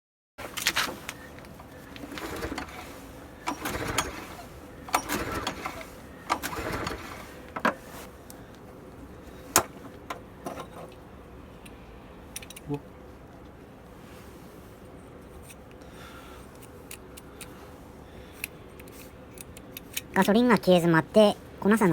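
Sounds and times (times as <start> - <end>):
generator recoil starter pulled: 0.5 - 8.0, 9.4 - 11.0.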